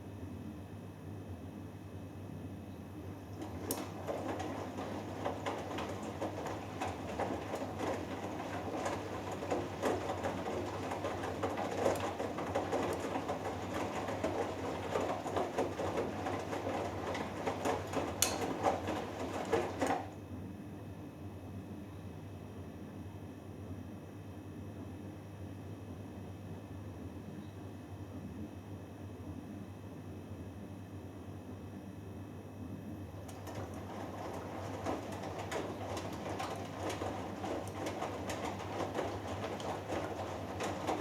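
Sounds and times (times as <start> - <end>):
water and clothes sloshing: 3.4 - 20.1, 33.2 - 41.0
washing machine drum turning: 3.4 - 20.2, 33.2 - 41.0.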